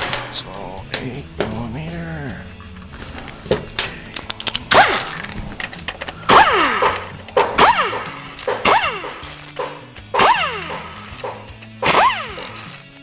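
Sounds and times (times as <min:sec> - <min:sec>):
power tool spinning bolts: 0:00.0 - 0:13.0.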